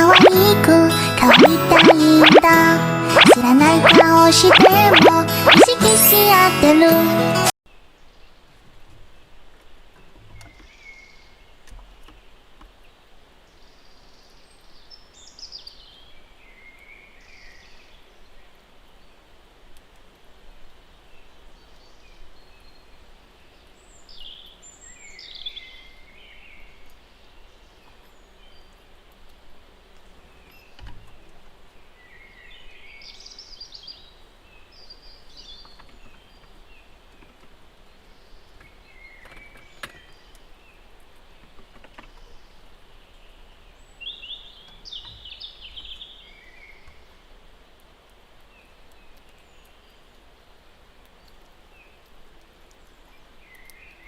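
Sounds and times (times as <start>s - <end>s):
small birds chirping: 0.0s - 2.6s, 3.2s - 5.8s, 30.1s - 47.2s
faint outdoor hiss: 7.7s - 54.0s.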